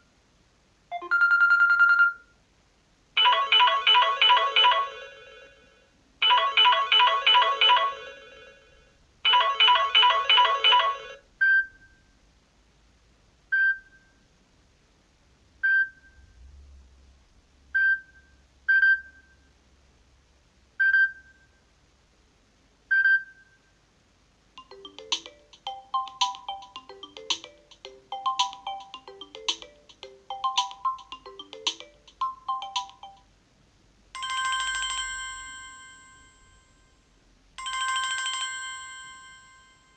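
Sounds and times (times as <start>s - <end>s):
melodic ringtone with clicking percussion: 3.2s - 5.5s, 6.2s - 8.6s, 9.3s - 11.2s, 24.6s - 33.3s, 34.2s - 36.8s, 37.6s - 39.9s
warbling electronic ringtone: 3.2s - 8.7s, 9.3s - 11.2s, 24.6s - 33.2s.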